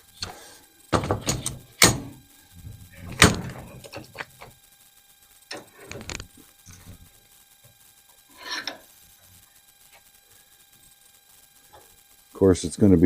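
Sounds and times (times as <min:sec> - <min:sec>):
parts scraping together: 0:08.3 - 0:08.9.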